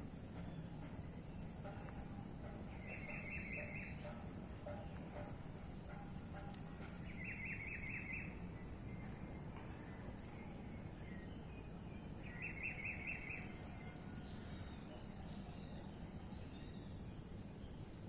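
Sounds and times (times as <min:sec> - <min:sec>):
steady low background noise: 0:00.0 - 0:18.0
small bird singing: 0:02.7 - 0:04.1, 0:07.0 - 0:09.1, 0:10.4 - 0:18.0.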